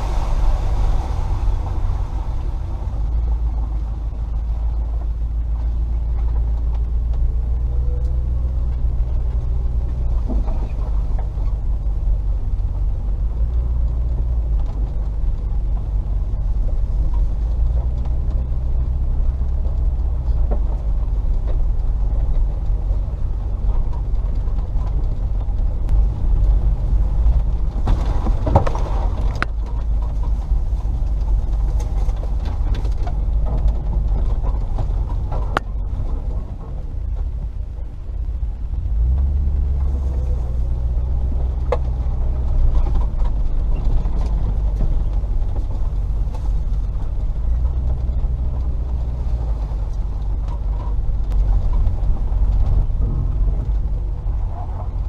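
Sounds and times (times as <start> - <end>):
car engine rumbling: 0.0 - 55.0.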